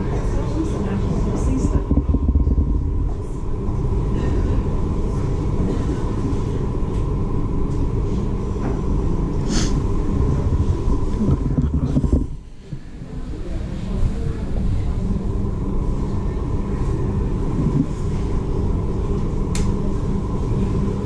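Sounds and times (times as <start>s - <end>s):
ferry engine low rumble: 0.0s - 21.0s
thin constant hum: 0.0s - 21.0s.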